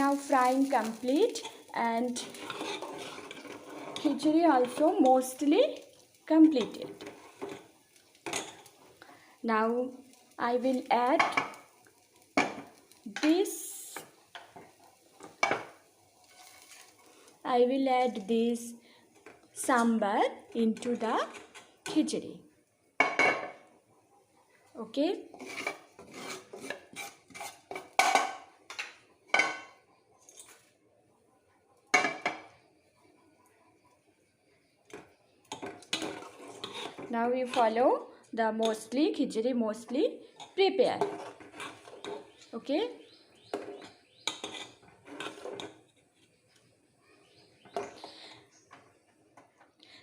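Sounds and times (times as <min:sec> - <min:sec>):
spoon scraping cooking pot: 0:00.9 - 0:05.5, 0:06.4 - 0:08.8, 0:12.4 - 0:17.1, 0:19.2 - 0:22.0, 0:25.1 - 0:30.7, 0:34.9 - 0:38.9, 0:39.8 - 0:46.3
metal spoon clinking on pot: 0:43.6 - 0:45.7.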